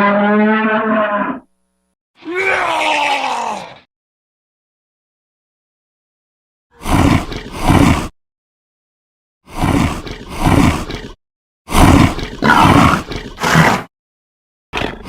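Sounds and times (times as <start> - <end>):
animal roars: 0.0 - 1.5, 6.8 - 8.1, 9.5 - 13.9.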